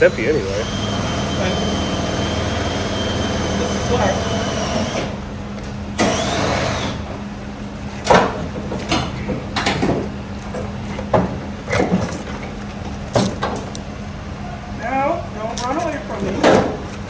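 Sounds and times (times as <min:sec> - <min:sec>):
steady low hum: 0:00.0 - 0:17.0
tools knocking and clanking: 0:08.0 - 0:13.8, 0:16.2 - 0:17.0.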